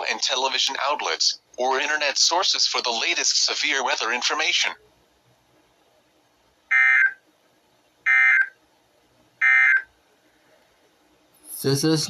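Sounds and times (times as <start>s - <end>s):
digital data tone bursts: 9.4s - 9.8s.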